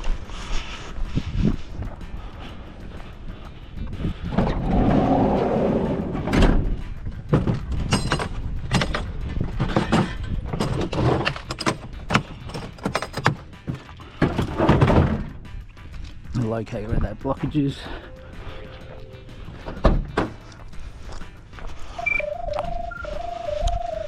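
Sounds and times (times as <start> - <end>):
heavy rumbling clatter: 1.4 - 16.4
knocks and clunks: 6.1 - 15.5, 19.5 - 20.5.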